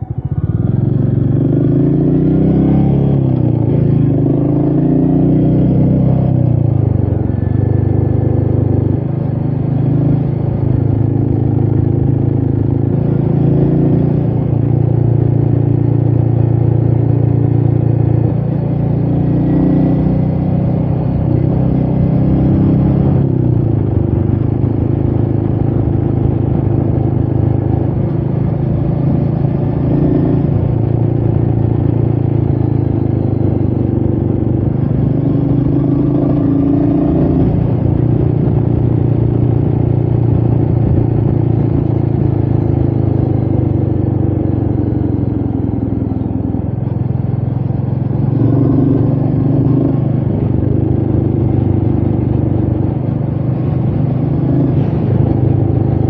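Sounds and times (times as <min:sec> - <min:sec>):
motorcycle engine running: 0:00.0 - 0:56.0
wind noise: 0:36.1 - 0:44.0.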